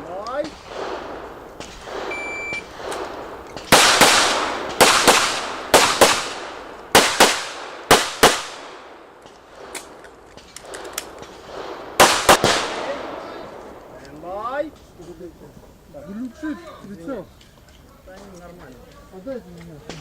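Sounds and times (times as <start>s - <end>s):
shot timer beep: 2.1s - 2.6s.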